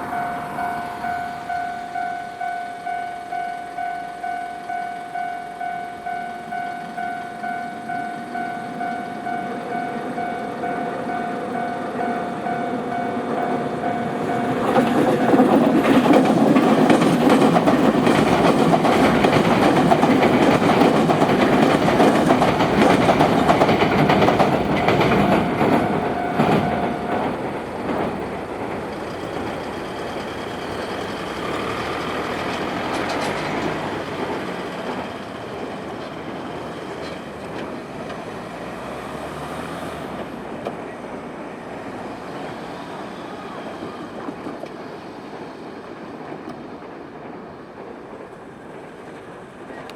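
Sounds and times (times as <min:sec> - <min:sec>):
level crossing warning bell: 0:00.0 - 0:38.7
train rumble: 0:00.0 - 0:49.9
train wheels clattering: 0:00.0 - 0:49.9.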